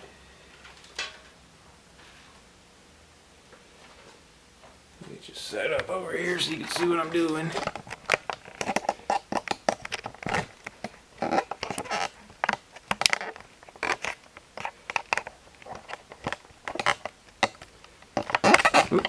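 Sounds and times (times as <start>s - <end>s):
clatter of dropped parts: 0.5s - 1.4s
hands handling wire and parts: 5.7s - 19.0s.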